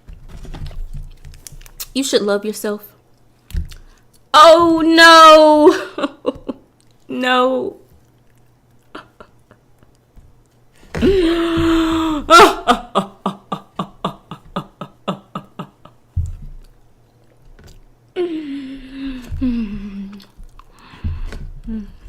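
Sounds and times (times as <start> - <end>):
person wailing: 4.4 - 6.1, 11.0 - 15.9, 18.2 - 20.2
person crying and sobbing: 4.4 - 7.4, 11.0 - 16.1, 18.2 - 20.4.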